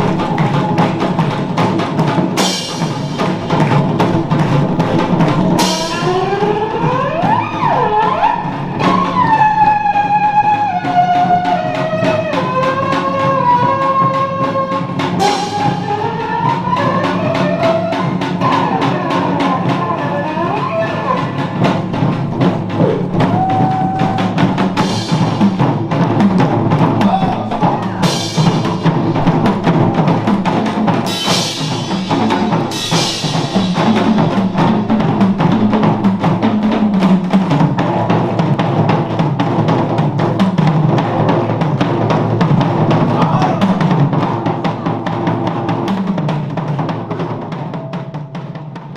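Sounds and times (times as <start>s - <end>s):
cymbal crashes: 0.0s - 10.1s, 21.4s - 38.8s
background music with drum beat: 0.0s - 48.9s.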